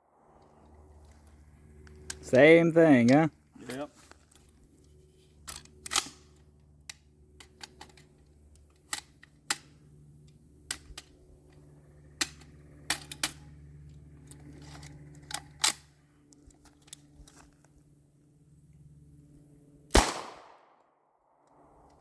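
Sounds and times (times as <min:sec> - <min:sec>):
metallic clicks of gun handling: 0:03.0 - 0:11.6, 0:12.2 - 0:17.5.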